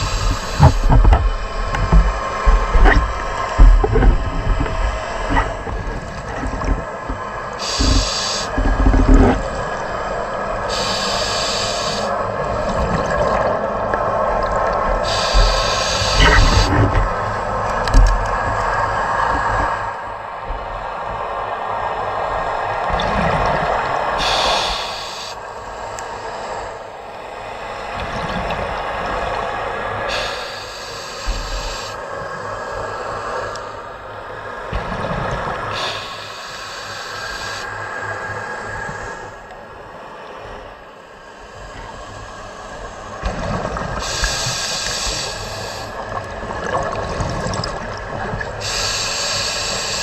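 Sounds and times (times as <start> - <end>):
regulator inhale hiss: 0.0 - 1.0, 7.6 - 8.7, 10.6 - 12.2, 15.0 - 16.7, 24.2 - 26.7, 30.1 - 34.0, 35.7 - 37.8, 44.0 - 46.0, 48.6 - 50.0
rumbling exhaust bubbles: 0.0 - 11.8
bubbly exhaled air underwater: 0.0 - 19.8, 43.2 - 50.0.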